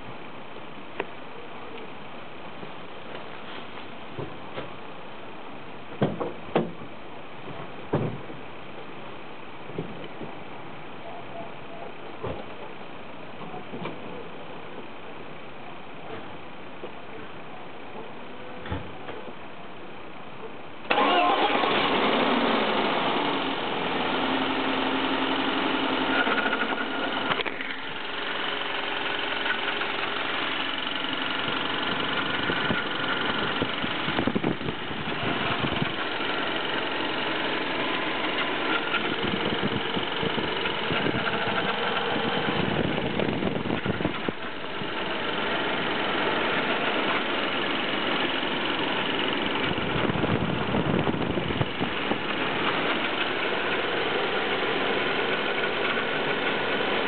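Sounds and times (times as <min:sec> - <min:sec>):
car engine idling: 0:00.0 - 0:57.0
metallic engine noise: 0:20.9 - 0:57.0.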